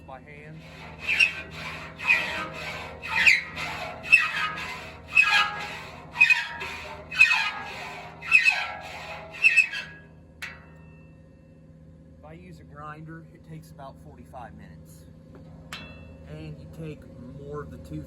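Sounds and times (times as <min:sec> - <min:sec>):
hand file rasping on steel: 0:00.0 - 0:10.0.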